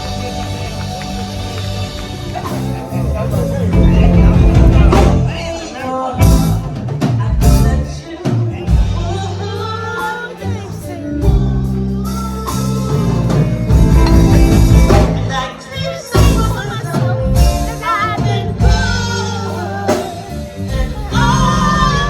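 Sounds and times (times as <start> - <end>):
song with vocals bass and drums: 0.0 - 22.0.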